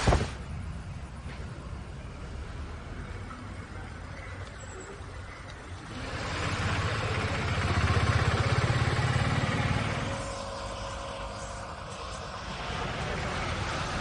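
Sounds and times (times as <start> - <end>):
vehicle passing by: 5.8 - 14.0.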